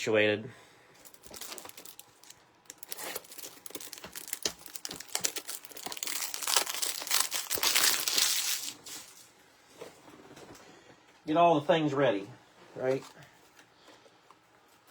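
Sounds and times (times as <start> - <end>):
plastic packaging crinkling: 1.0 - 9.3.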